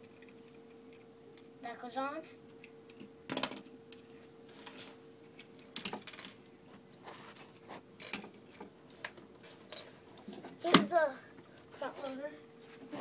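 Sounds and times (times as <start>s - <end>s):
faint steady hum: 0.0s - 13.0s
plastic toy clicks and knocks: 3.0s - 3.7s.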